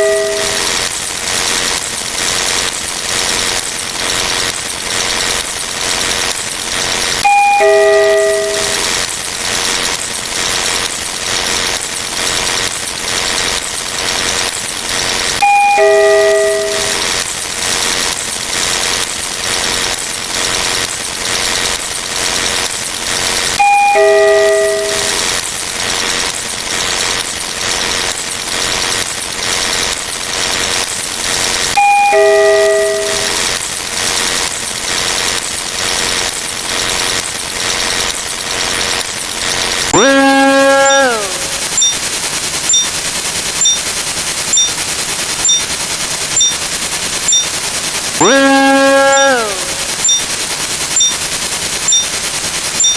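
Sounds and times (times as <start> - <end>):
two-note doorbell chime: 0.0 - 0.8, 7.2 - 8.9, 15.4 - 17.1, 23.6 - 25.3, 31.8 - 33.5.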